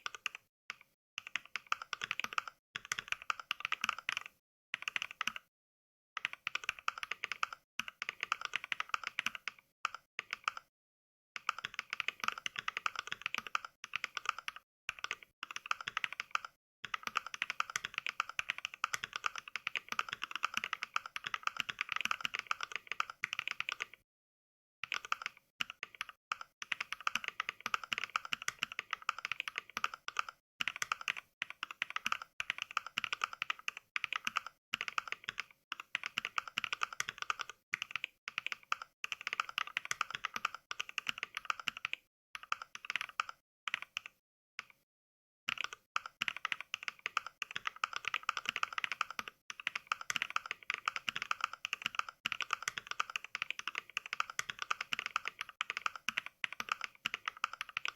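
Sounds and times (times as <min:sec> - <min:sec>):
mechanical keyboard typing: 0:00.0 - 0:05.5, 0:06.2 - 0:10.7, 0:11.4 - 0:24.0, 0:24.8 - 0:44.8, 0:45.5 - 0:57.9.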